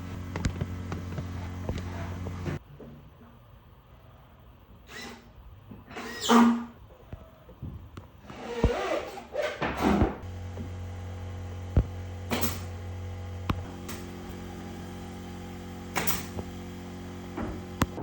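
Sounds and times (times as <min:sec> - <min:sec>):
small electric motor humming: 0:10.2 - 0:18.0.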